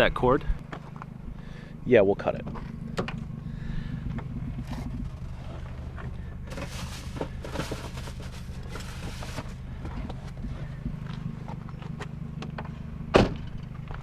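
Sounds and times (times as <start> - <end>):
low engine hum: 0.0 - 14.0
rustling and scraping: 4.1 - 12.1.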